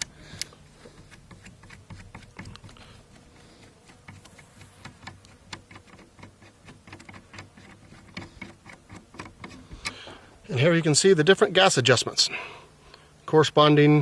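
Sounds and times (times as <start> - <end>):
metallic clicks and scrapes: 0.0 - 10.0
faint steady buzz: 0.0 - 14.0.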